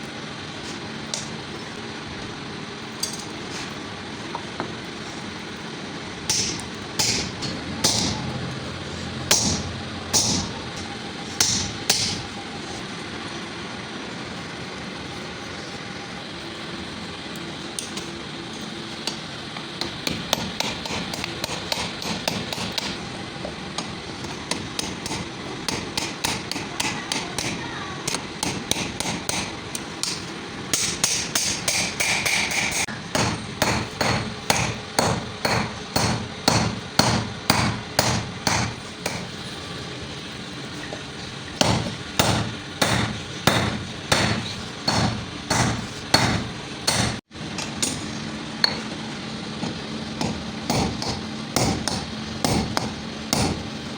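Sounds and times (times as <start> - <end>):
constant background noise: 0.0 - 53.9
hammer striking steel: 6.3 - 8.3, 9.3 - 10.6, 11.4 - 12.2, 19.8 - 23.0, 23.8 - 39.4, 41.6 - 48.9, 49.6 - 53.7.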